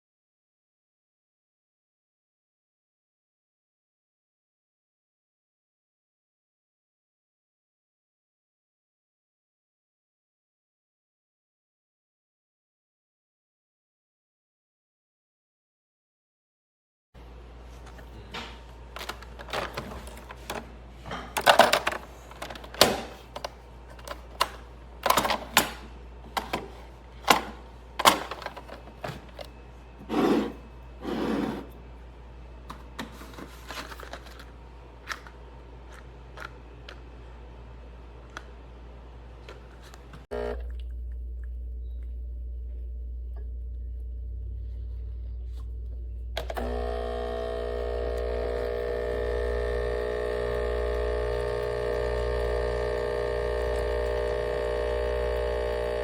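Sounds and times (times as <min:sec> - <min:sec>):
espresso machine pump humming: 0:17.2 - 0:56.0
plastic machine clicks and knocks: 0:21.3 - 0:28.8
short scraping: 0:30.0 - 0:31.8.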